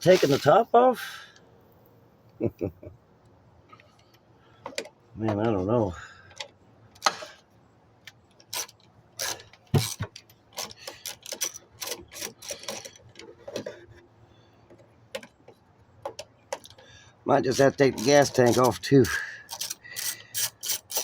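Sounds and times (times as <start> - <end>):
hand tools clicking and scraping: 0.0 - 0.6, 8.4 - 14.0, 17.5 - 21.0.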